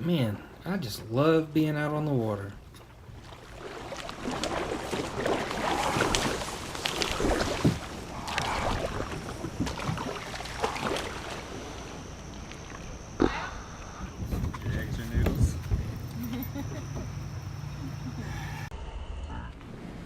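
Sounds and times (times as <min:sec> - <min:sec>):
water splashing around a kayak: 0:02.6 - 0:16.3.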